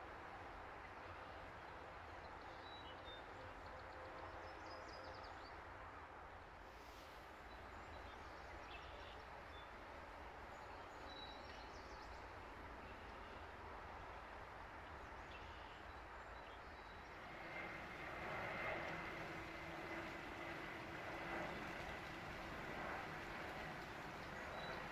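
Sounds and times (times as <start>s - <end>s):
faint steady tone: 17.0s - 24.9s
river water rushing: 17.1s - 24.9s.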